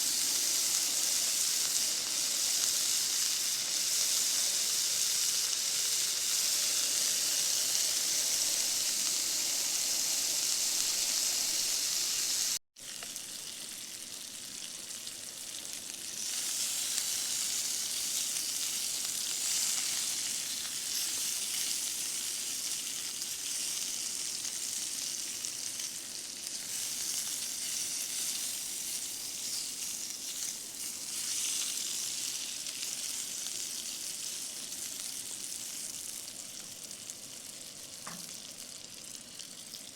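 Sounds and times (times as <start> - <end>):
sausages sizzling in a pan: 0.0 - 39.9.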